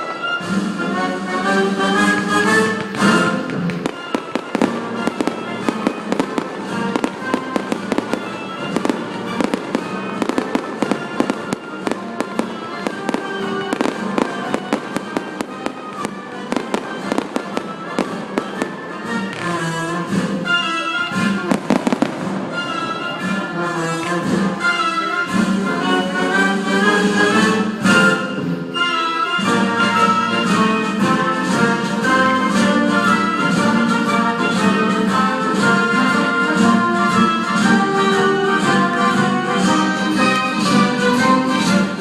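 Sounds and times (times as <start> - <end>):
orchestral music: 0.0 - 42.0
fireworks bangs and crackles: 1.5 - 24.6.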